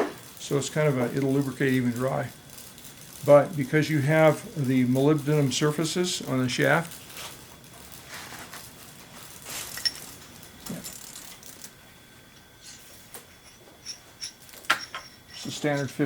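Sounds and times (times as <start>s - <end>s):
metal parts handled on workbench: 9.4s - 11.6s, 13.2s - 15.6s.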